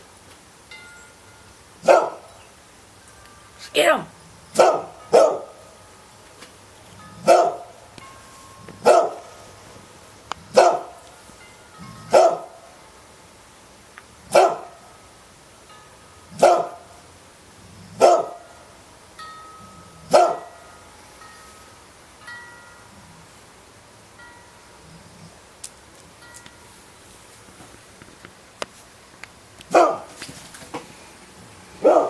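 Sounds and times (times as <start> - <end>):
dog barking: 1.8 - 2.3, 4.6 - 5.6, 7.2 - 7.7, 8.8 - 9.2, 10.5 - 10.9, 12.1 - 12.6, 14.3 - 14.8, 16.4 - 16.8, 18.0 - 18.4, 20.1 - 20.6, 29.7 - 30.2, 31.8 - 32.0.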